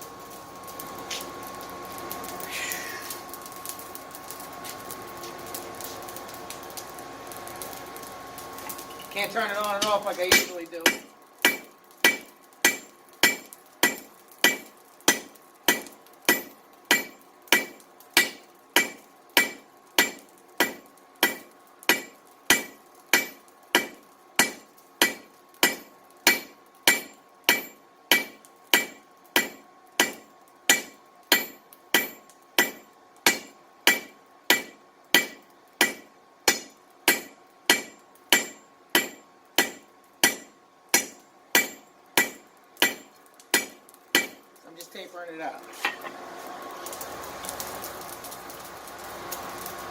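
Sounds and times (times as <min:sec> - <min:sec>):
hammer striking steel on anvil: 0:09.8 - 0:44.4, 0:45.8 - 0:46.2.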